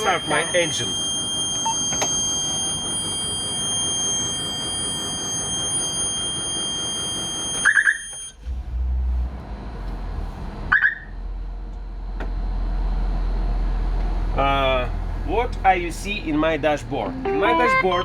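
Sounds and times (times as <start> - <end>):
high-pitched dashboard tone: 0.0 - 8.5, 15.3 - 18.0
bus engine starting and idling: 0.0 - 18.0.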